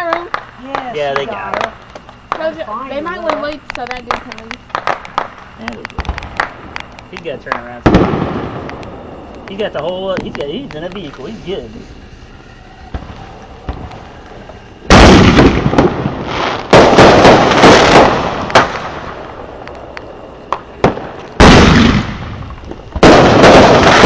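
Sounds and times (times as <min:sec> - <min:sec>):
fireworks blasts: 0:00.0 - 0:24.0
fireworks sharp cracks: 0:00.0 - 0:24.0.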